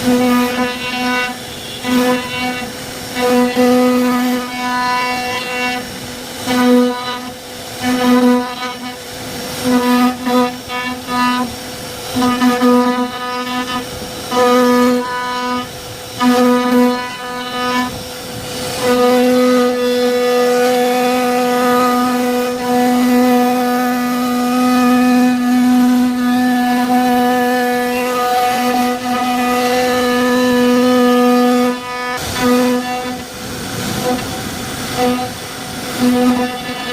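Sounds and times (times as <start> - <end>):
router whine: 0.0 - 36.9.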